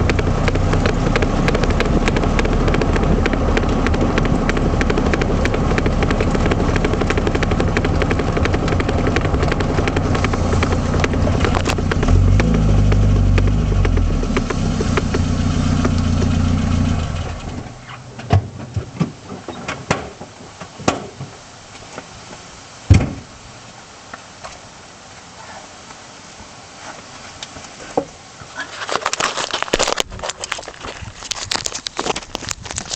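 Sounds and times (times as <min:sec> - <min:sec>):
car engine running with ticking: 0:00.0 - 0:18.2
knocks and clunks: 0:00.0 - 0:21.3.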